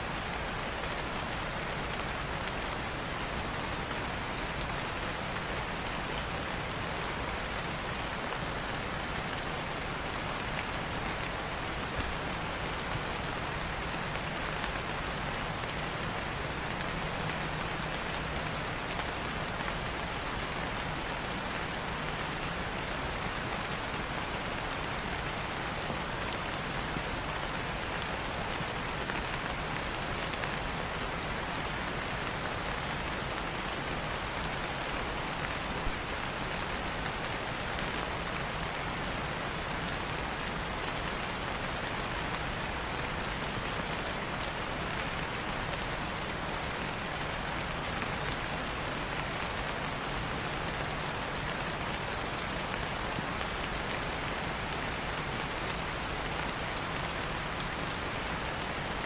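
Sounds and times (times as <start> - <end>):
rain falling on leaves: 0.0 - 59.0.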